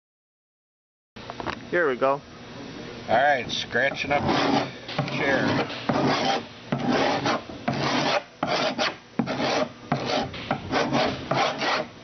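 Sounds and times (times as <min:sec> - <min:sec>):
rasping scrapes on plastic chair: 0:04.0 - 0:11.9.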